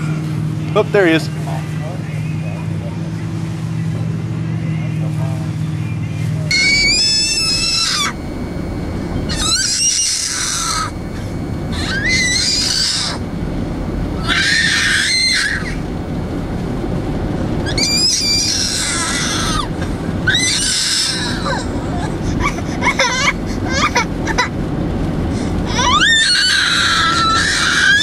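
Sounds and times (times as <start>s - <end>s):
child squealing: 6.5s - 8.4s, 9.2s - 13.2s, 14.2s - 15.8s, 17.7s - 24.5s, 25.7s - 28.0s
steady low rumble: 6.5s - 27.6s.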